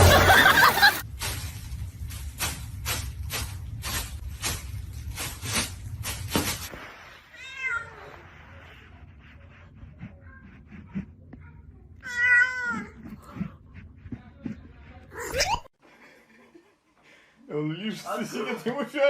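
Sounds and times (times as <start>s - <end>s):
cat meowing: 7.2s - 8.3s.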